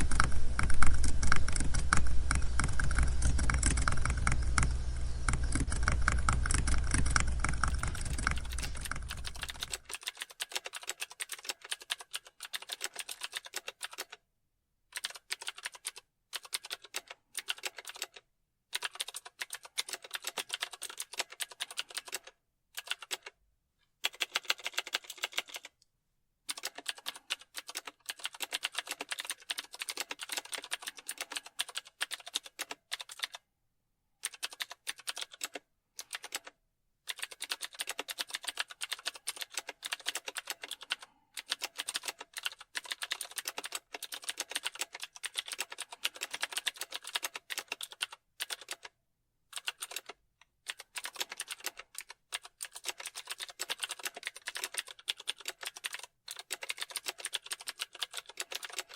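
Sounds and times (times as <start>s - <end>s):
keyboard typing: 0.0s - 14.2s, 14.9s - 23.4s, 24.0s - 25.8s, 26.5s - 33.4s, 34.2s - 58.9s.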